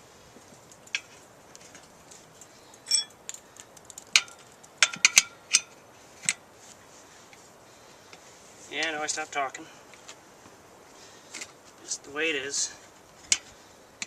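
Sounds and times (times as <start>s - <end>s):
metal tools clinking on wheel: 0.7s - 3.4s.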